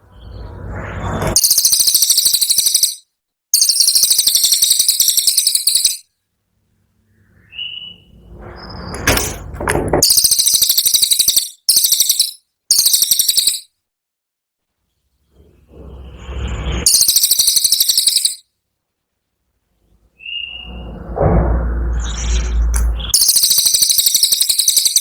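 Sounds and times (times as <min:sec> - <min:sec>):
songbird fast high trills: 0:03.6 - 0:06.0, 0:16.9 - 0:18.4
low rushing noise: 0:19.8 - 0:23.1.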